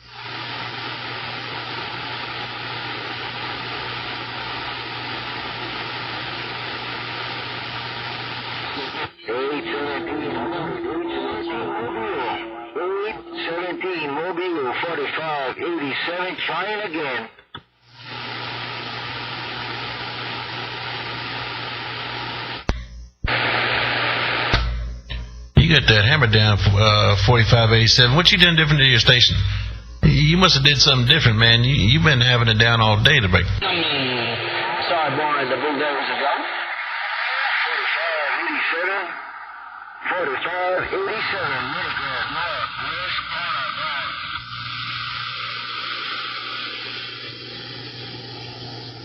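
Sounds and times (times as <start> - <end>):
radio static hiss: 0.0 - 49.0
low hum: 8.6 - 16.1, 24.6 - 49.0
faint steady whistle: 9.0 - 15.6.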